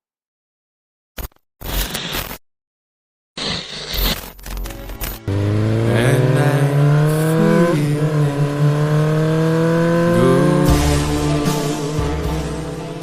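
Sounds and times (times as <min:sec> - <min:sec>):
motorcycle engine accelerating: 0:05.2 - 0:13.0.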